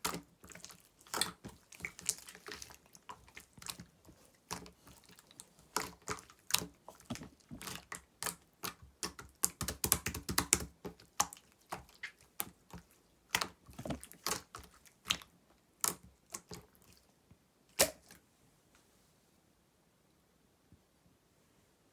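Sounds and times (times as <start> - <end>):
slime clicking and popping: 5.8 - 11.9.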